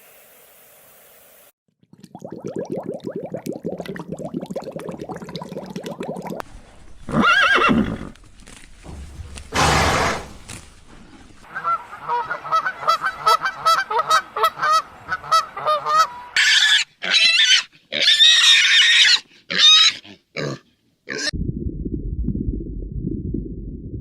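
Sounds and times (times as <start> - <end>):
farm animals calling: 11.4 - 21.3.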